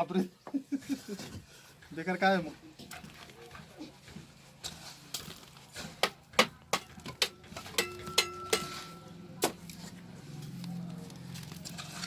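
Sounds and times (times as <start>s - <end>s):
sharp knocks and clinks: 6.9s - 9.2s.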